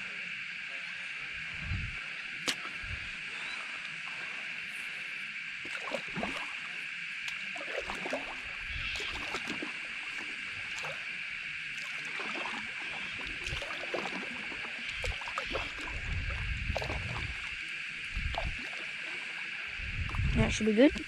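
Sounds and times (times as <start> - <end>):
low rumbles: 1.4 - 3.3
water splashing from paddling: 2.2 - 21.0.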